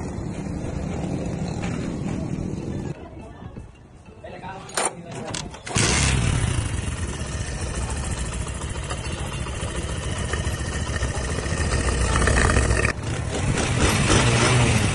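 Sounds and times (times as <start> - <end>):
motorcycle engine running: 5.8 - 14.9.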